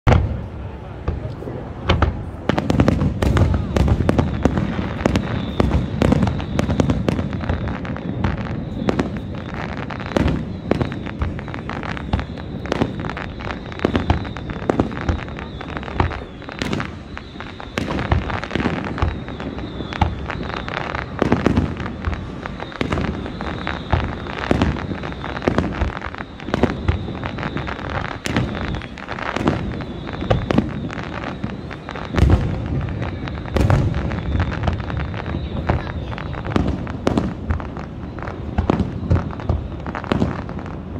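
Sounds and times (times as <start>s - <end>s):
fireworks bangs and crackling: 0.0s - 40.9s
heavy fireworks boom: 0.0s - 40.9s.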